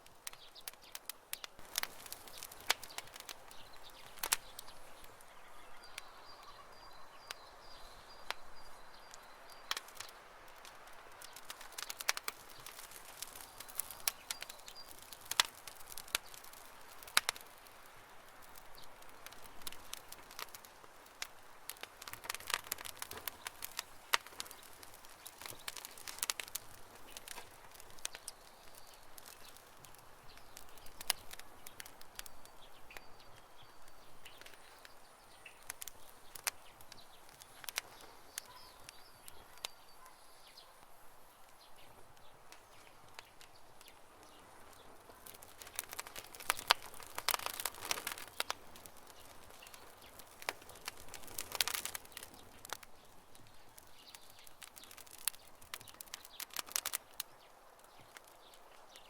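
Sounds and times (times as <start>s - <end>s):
campfire crackling and popping: 0.0s - 59.0s
faint bird chirps: 2.3s - 10.3s, 27.1s - 51.0s.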